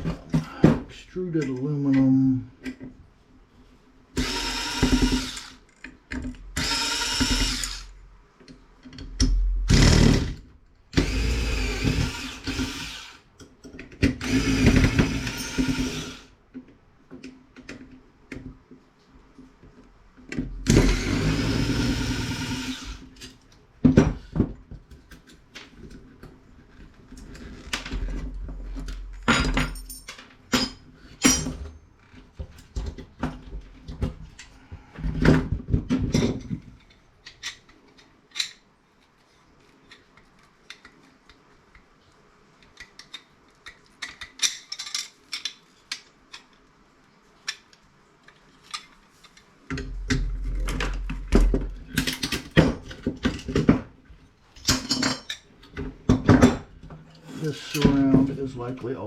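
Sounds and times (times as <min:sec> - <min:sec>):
power drill running in bursts: 0:04.2 - 0:05.6, 0:06.6 - 0:07.9, 0:11.0 - 0:13.2, 0:14.2 - 0:16.3, 0:20.7 - 0:23.0.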